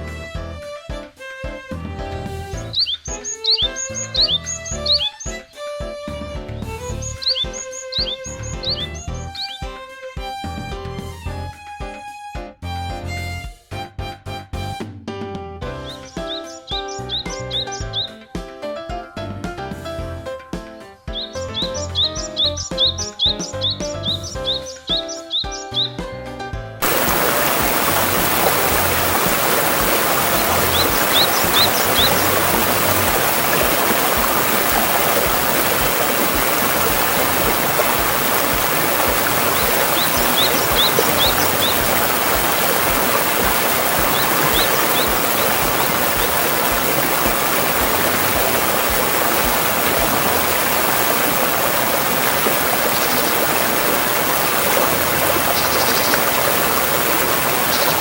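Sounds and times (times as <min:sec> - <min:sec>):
bird chirping: 0:02.6 - 0:05.6, 0:06.6 - 0:09.6, 0:15.8 - 0:18.2, 0:21.1 - 0:26.0, 0:26.8 - 0:50.0, 0:55.3 - 0:58.0
stream rushing over rocks: 0:26.8 - 0:58.0.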